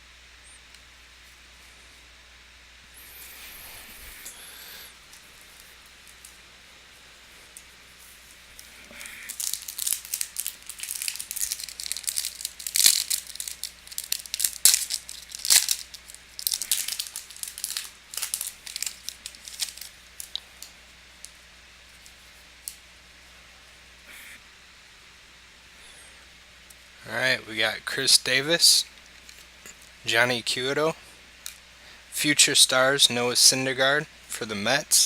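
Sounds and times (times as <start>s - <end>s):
wrapper tearing and crinkling: 8.6s - 21.4s.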